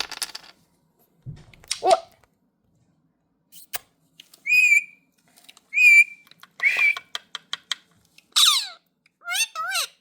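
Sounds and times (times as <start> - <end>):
parrot whistled calls: 4.4 - 5.0, 5.7 - 7.1.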